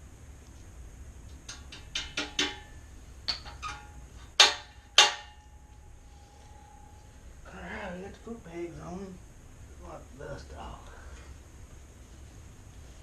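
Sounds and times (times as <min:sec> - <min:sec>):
sharp knocks and clicks: 0:01.4 - 0:05.4
faint ringing tone: 0:05.4 - 0:08.1.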